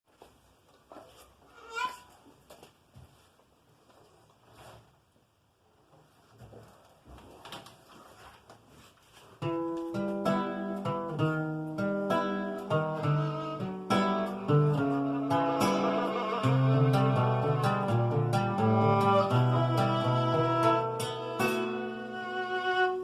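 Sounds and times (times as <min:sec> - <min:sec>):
acoustic guitar plucked notes: 0:09.4 - 0:23.0.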